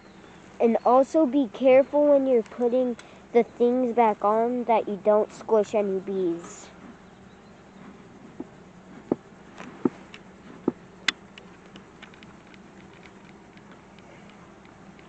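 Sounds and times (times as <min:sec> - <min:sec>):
honeybees buzzing: 0:00.0 - 0:15.0
light clicks and knocks of hive frames: 0:07.7 - 0:15.0.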